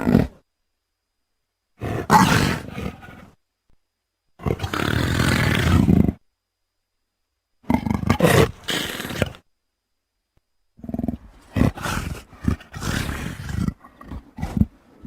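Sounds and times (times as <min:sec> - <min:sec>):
big cat roaring: 0:00.0 - 0:00.4, 0:01.8 - 0:03.3, 0:04.4 - 0:06.2, 0:07.6 - 0:09.4, 0:10.8 - 0:15.0.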